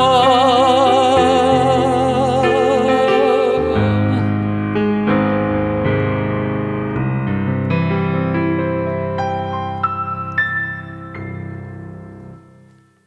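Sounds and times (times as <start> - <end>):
man singing with vibrato: 0.0 - 4.5
electric keyboard chords: 4.4 - 13.0.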